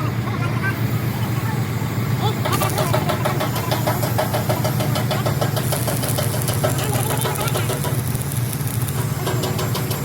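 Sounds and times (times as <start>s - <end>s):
engine running: 0.0s - 10.0s
rapid engine ticking: 2.2s - 10.0s.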